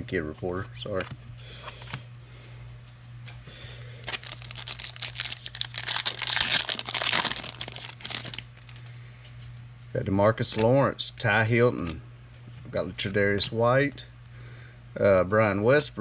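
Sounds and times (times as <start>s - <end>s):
foil wrapper crinkling and tearing: 4.0s - 8.8s.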